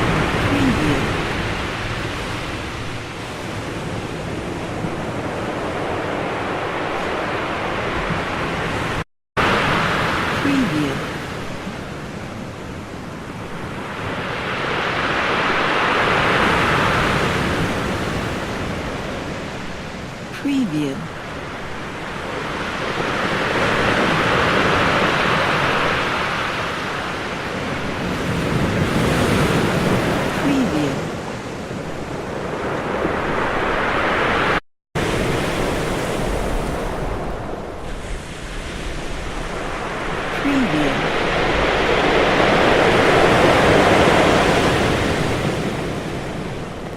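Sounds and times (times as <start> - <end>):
ocean surf breaking: 0.0 - 20.4, 21.0 - 46.9.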